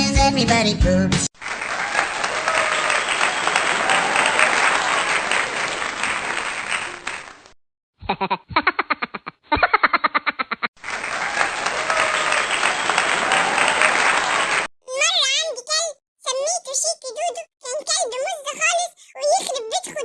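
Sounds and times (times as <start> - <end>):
crowd clapping: 1.4 - 7.6, 10.8 - 14.7.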